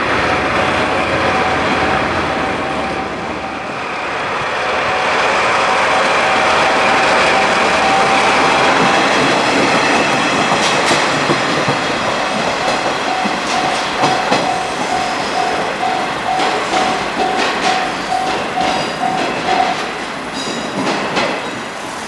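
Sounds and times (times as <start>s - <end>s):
level crossing warning bell: 0.0s - 22.0s
train rolling past: 0.0s - 22.0s
wheel clicks over rail joints: 8.6s - 21.6s.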